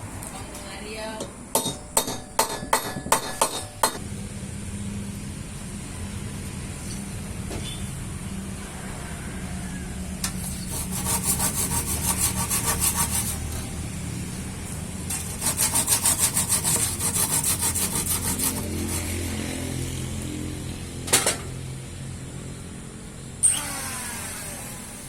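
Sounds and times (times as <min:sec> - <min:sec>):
saw cutting wood: 0:10.3 - 0:13.8, 0:15.1 - 0:19.7.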